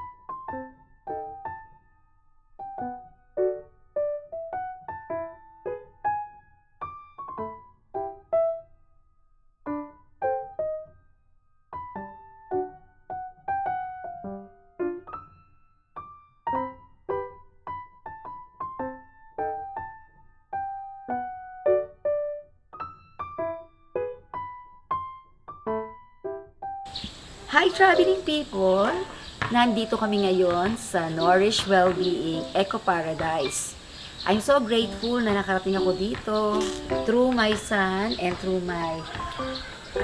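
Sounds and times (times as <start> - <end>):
piano melody: 26.9 - 40.0.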